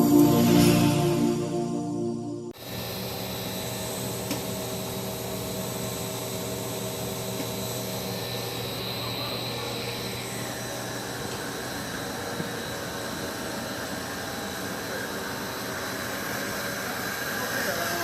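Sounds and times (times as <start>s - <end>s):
intro music: 0.0s - 2.6s
machinery hum and hiss: 2.6s - 18.0s.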